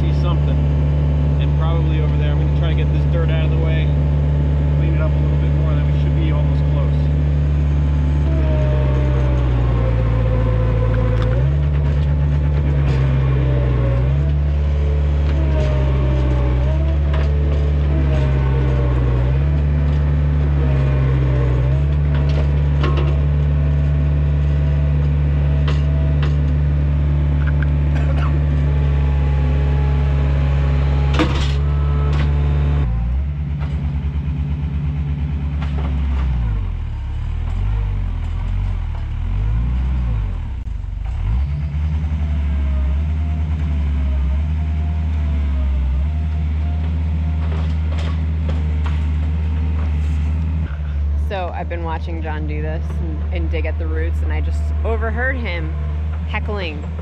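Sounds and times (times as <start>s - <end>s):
diesel engine running hard: 0.0s - 57.0s
gliding hydraulic whine: 4.7s - 34.0s.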